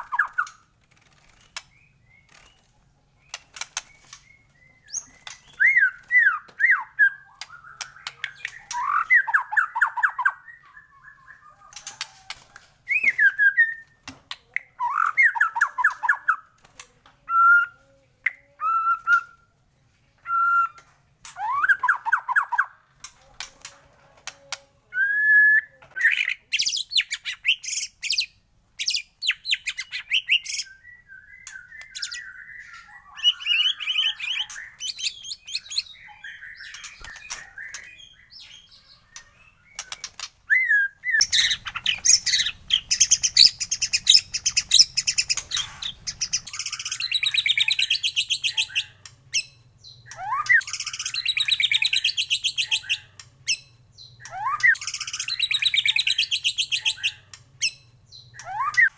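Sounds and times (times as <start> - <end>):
bird song with whistled phrases: 0.0 - 0.6, 1.6 - 12.3, 12.9 - 16.5, 17.3 - 19.5, 20.2 - 22.8, 24.9 - 58.9
bird clicks and rapid trills: 0.1 - 6.2, 11.7 - 12.7, 39.2 - 40.4, 41.2 - 49.2.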